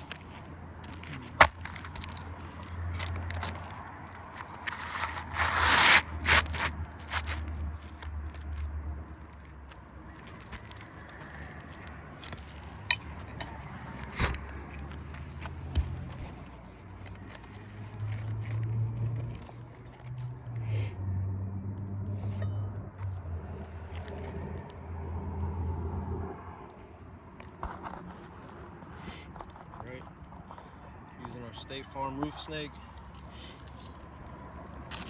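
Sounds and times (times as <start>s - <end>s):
tools scraping on roof shingles: 0.0s - 7.6s, 10.2s - 19.6s
sharp clicks and clinks: 10.4s - 15.5s.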